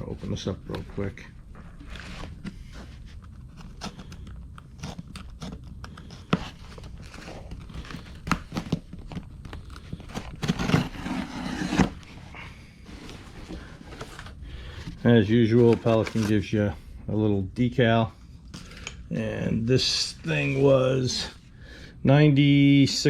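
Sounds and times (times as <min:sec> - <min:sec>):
packaging rustling: 0:00.0 - 0:16.5
box clicks and scrapes: 0:01.8 - 0:12.2, 0:12.8 - 0:16.4.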